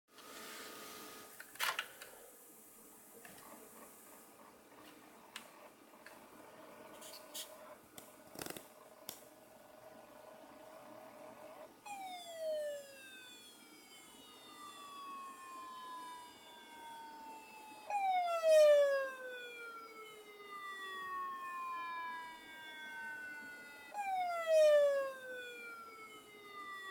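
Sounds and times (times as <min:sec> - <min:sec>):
tone gliding down in pitch: 0:11.8 - 0:26.9.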